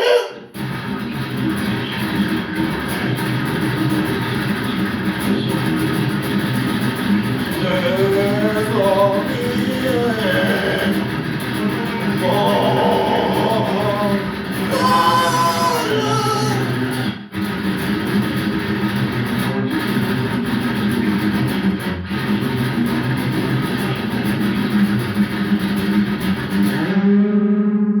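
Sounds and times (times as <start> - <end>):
person singing: 0.0 - 0.5, 7.6 - 17.2
thrash metal band playing: 0.5 - 27.0.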